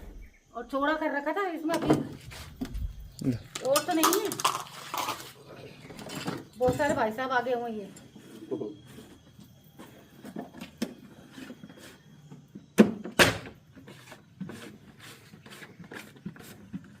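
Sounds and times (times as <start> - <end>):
objects being handled: 2.0 - 6.9.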